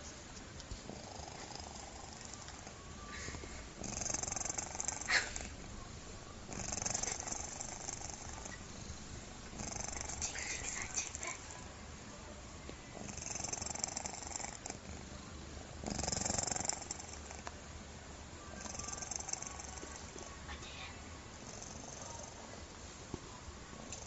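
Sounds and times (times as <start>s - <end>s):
cat snoring: 0.8s - 5.6s, 6.5s - 8.9s, 9.5s - 11.6s, 13.0s - 15.2s, 15.8s - 17.5s, 18.5s - 20.1s, 21.3s - 22.4s.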